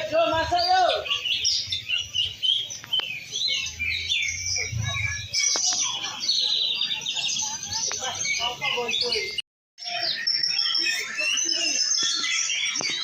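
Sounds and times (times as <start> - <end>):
fast rattling bird trill: 0.0 - 13.0
songbirds chirping and whistling: 0.0 - 13.0.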